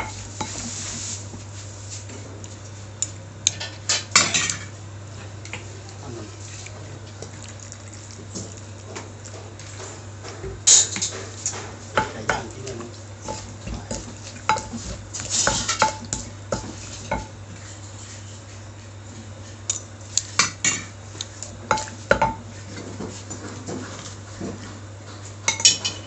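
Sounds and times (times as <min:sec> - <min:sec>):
steady low hum: 0:00.0 - 0:26.0
utensils clinking on dishes: 0:03.5 - 0:04.7, 0:10.6 - 0:17.3, 0:25.4 - 0:26.0.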